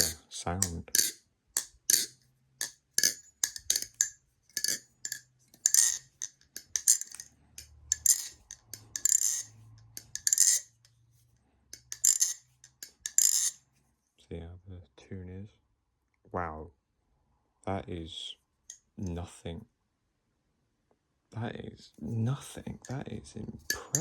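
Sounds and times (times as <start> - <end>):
butterfly knife metallic clacking: 0.0 - 10.7, 11.8 - 13.6, 23.7 - 24.0.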